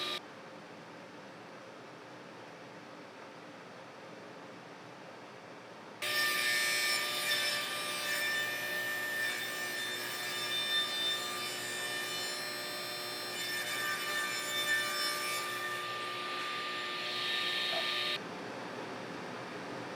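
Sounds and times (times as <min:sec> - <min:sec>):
power saw cutting: 0:00.0 - 0:00.2, 0:06.0 - 0:18.2.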